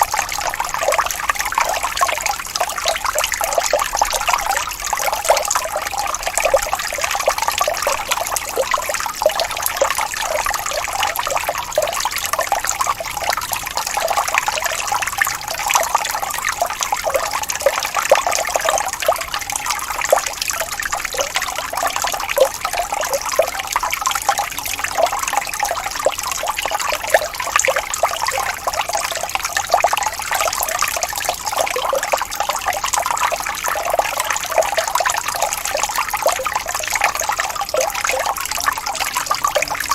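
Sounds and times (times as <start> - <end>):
water splashing over rocks: 19.7 - 39.9.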